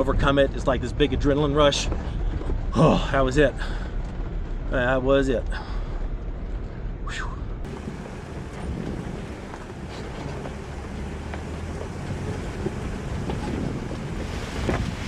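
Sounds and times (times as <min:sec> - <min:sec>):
engine and road rumble: 0:00.0 - 0:15.0
wind noise on microphone: 0:06.1 - 0:15.0.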